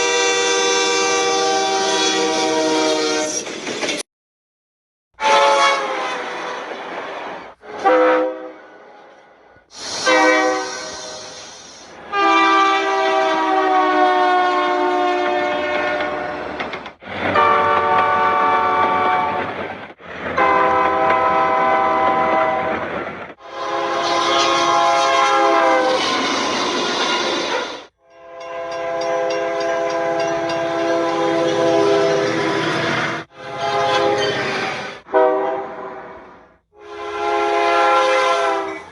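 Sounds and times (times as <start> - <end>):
train horn blasts: 0.0 - 3.4, 5.2 - 6.5, 7.6 - 9.0, 10.0 - 11.2, 12.1 - 16.6, 17.3 - 19.5, 20.4 - 22.8, 23.4 - 26.0, 28.0 - 34.4, 35.0 - 38.9.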